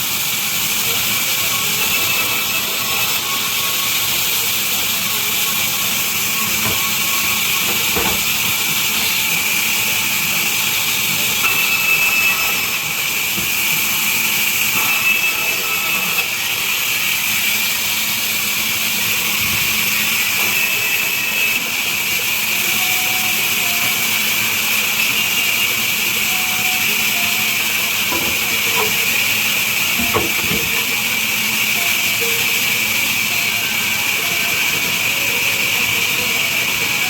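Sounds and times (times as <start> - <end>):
band saw cutting wood: 0.0 - 37.0.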